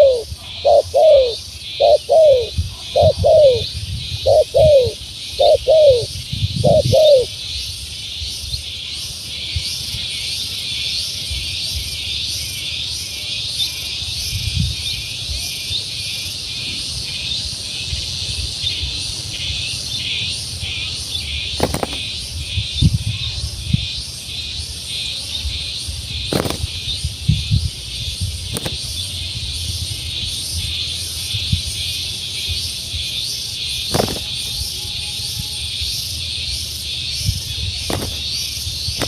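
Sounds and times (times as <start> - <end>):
dove cooing: 0.0 - 7.3.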